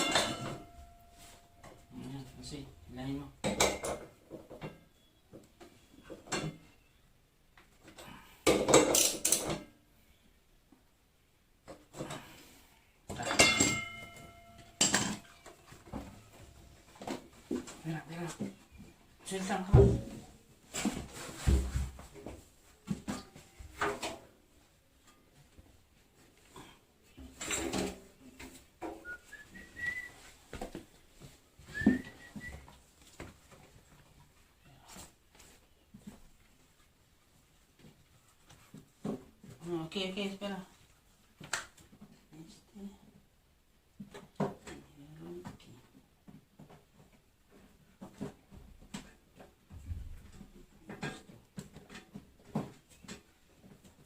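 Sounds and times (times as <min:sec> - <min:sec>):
knocks and clatter of handling parts: 0:00.0 - 0:01.9, 0:03.4 - 0:06.9, 0:07.6 - 0:09.8, 0:13.1 - 0:39.6, 0:44.0 - 0:54.0.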